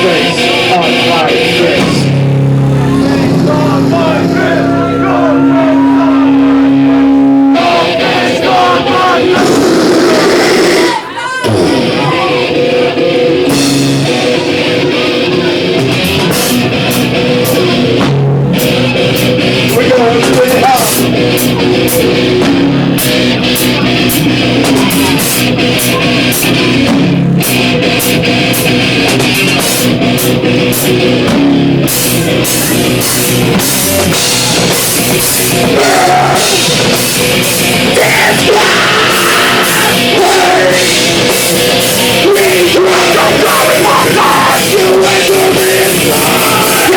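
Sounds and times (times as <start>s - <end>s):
live rock band playing: 0.0s - 46.9s
cymbals crashing: 2.0s - 7.6s.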